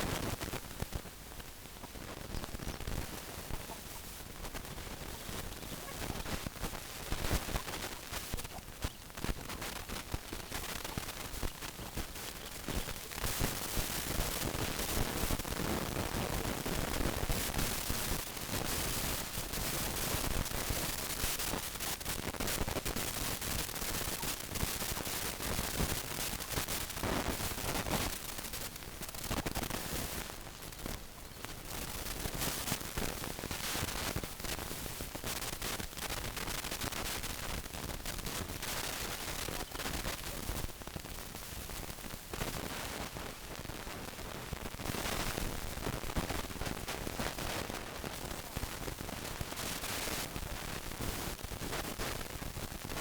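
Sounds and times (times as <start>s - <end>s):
steady hiss: 0.0s - 53.0s
chickens pecking and scratching: 1.8s - 34.6s.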